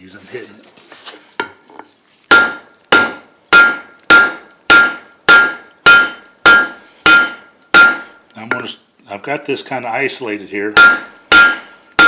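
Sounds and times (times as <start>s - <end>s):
hammer ringing on anvil: 2.3s - 8.8s, 10.8s - 12.0s.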